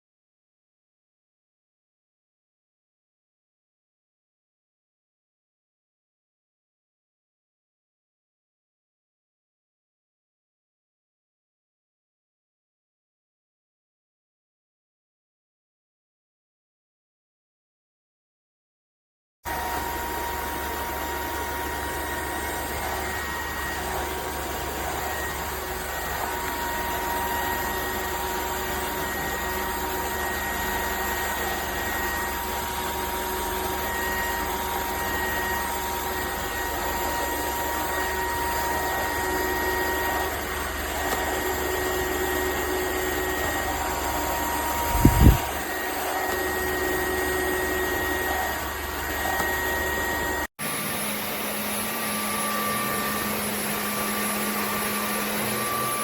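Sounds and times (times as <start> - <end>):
vacuum cleaner whining: 19.5 - 56.0.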